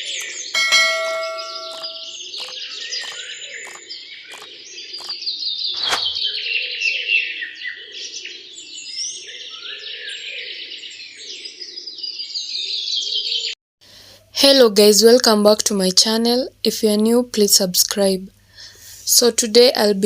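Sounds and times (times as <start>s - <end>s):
small birds chirping: 0.0s - 13.5s
sharp clicks: 1.7s - 5.2s.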